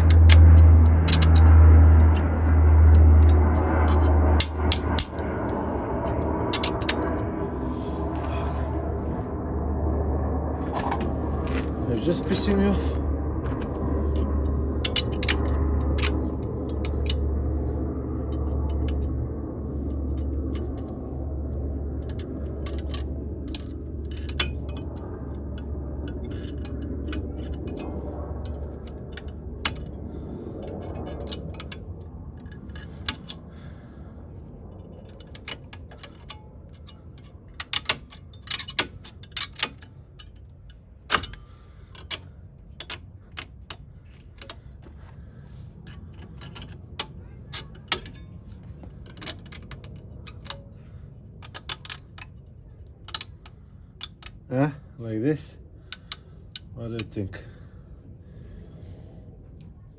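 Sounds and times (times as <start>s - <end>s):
metallic clicks and taps: 0.0s - 5.5s, 34.8s - 42.2s, 45.9s - 50.7s, 51.4s - 54.4s
low rumble: 0.0s - 59.9s.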